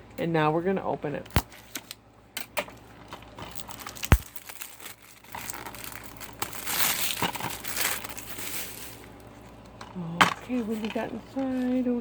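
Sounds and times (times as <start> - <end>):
plastic crinkling: 3.1 - 9.6.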